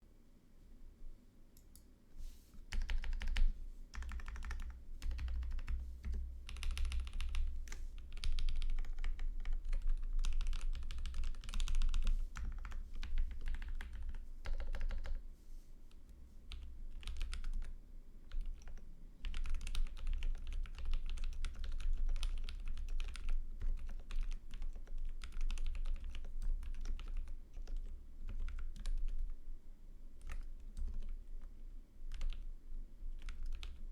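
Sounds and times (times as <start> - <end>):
mechanical keyboard typing: 2.7 - 15.2, 16.5 - 17.7, 18.3 - 29.3, 32.1 - 32.4, 33.2 - 33.8.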